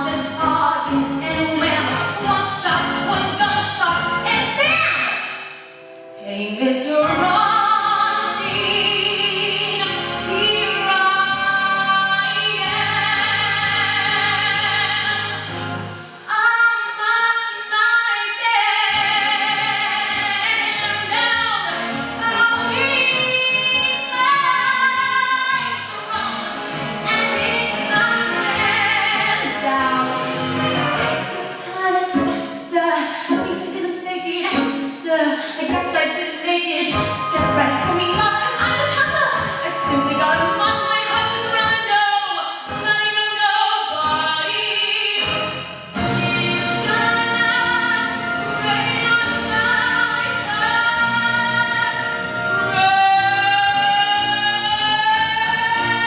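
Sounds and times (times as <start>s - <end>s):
instrumental accompaniment: 18.9s - 42.1s.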